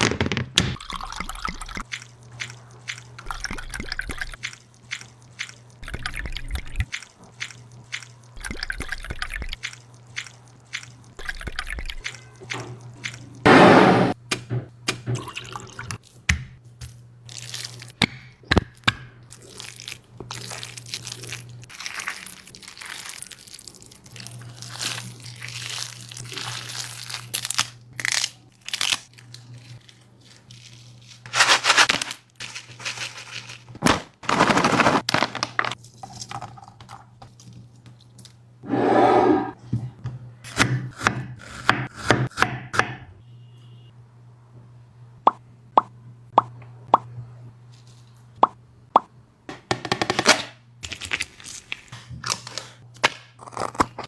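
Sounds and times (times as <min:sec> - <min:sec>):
water dripping and splashing: 0:00.8 - 0:13.4.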